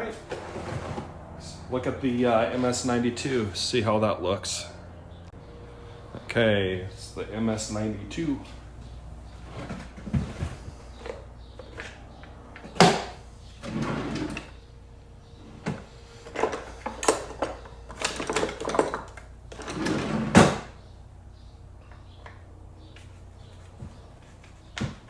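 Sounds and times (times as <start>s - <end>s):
rattling and scraping: 0.0s - 3.8s, 7.0s - 20.9s
clicks and knocks of chainsaw parts: 16.2s - 19.8s.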